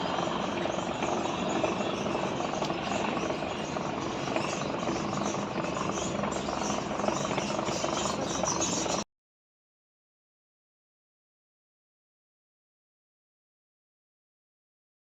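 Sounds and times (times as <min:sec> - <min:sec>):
gate gear motor running: 0:00.0 - 0:09.0.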